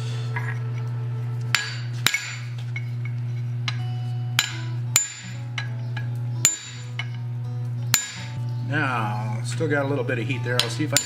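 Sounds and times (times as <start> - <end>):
low hum: 0.0 - 11.0
hammer striking steel anvil: 1.5 - 7.2, 7.9 - 8.4, 10.5 - 11.0.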